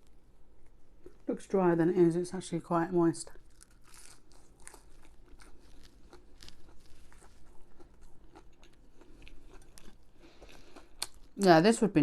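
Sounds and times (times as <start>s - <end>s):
person chewing food: 0.0s - 1.3s, 3.4s - 11.5s.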